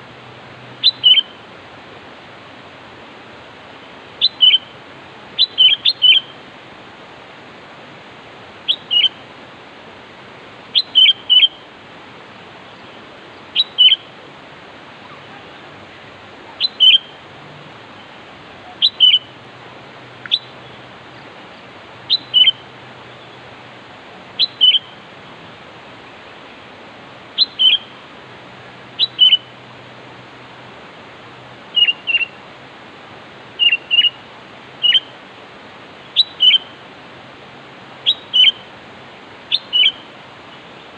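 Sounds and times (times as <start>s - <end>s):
steady hiss: 0.0s - 40.9s
bird calling short phrases: 0.8s - 1.4s, 4.2s - 4.7s, 5.4s - 6.3s, 8.7s - 9.2s, 10.8s - 11.6s, 13.6s - 14.1s, 16.5s - 17.2s, 18.0s - 19.4s, 22.1s - 22.6s, 24.4s - 25.0s, 27.4s - 27.9s, 29.0s - 29.5s, 31.8s - 32.4s, 33.6s - 34.2s, 34.8s - 35.1s, 36.2s - 36.8s, 38.0s - 38.6s, 39.5s - 40.1s.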